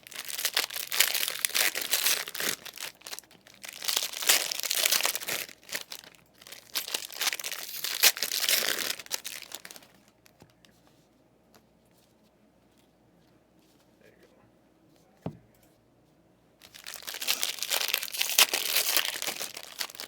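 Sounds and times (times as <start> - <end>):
plastic wrapping crinkling and tearing: 0.0 - 10.4, 16.6 - 20.0.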